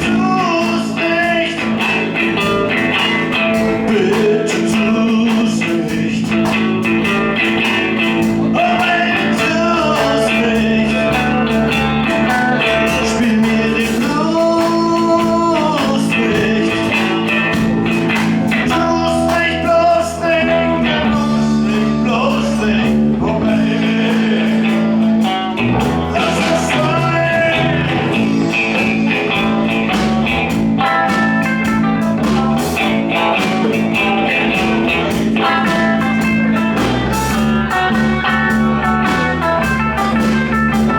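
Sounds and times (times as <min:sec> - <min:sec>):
guitar melody: 0:00.0 - 0:40.9
live blues-rock band: 0:00.0 - 0:40.9.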